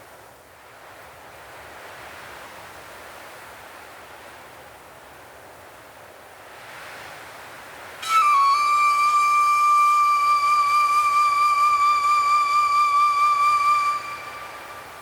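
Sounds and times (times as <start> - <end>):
soft wind-like hiss: 0.0 - 15.0
flute long held note: 8.0 - 15.0.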